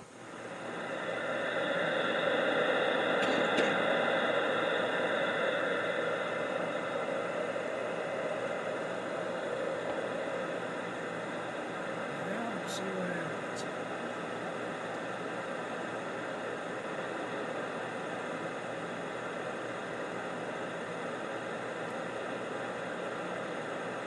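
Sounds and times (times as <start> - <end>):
radio static hiss: 6.6 - 14.0.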